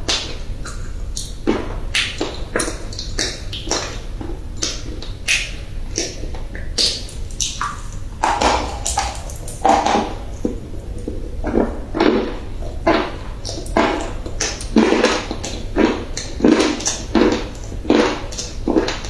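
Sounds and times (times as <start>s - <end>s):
crunchy food being bitten: 0.1s - 19.0s.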